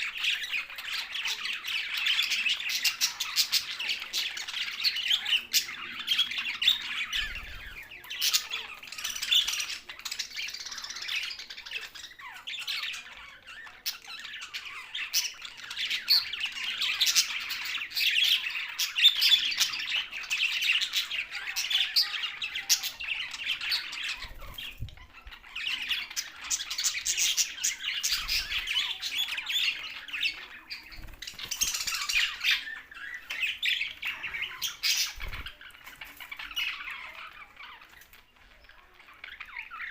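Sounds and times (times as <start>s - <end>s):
budgerigars chattering and squawking: 0.0s - 39.9s.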